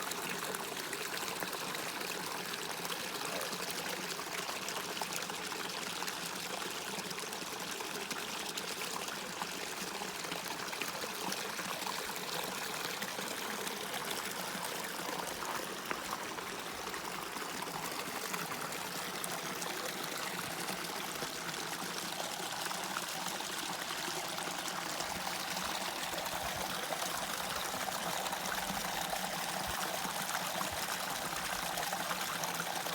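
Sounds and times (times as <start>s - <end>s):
water trickling into pool: 0.0s - 32.9s.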